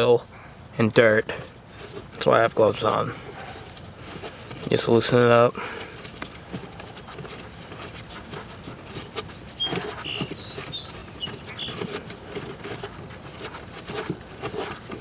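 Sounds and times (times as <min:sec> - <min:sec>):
faint clicking and rustling: 0:00.9 - 0:15.0
small bird chirping: 0:08.6 - 0:12.0.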